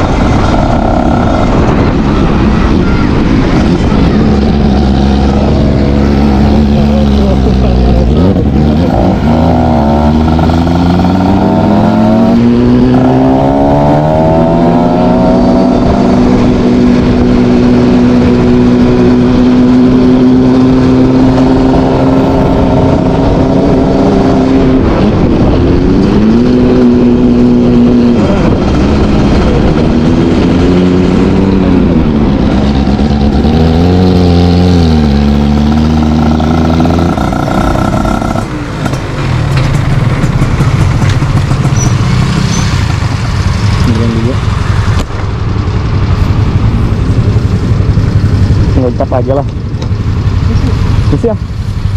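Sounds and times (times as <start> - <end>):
motorcycle engine revving: 0.0 - 51.9.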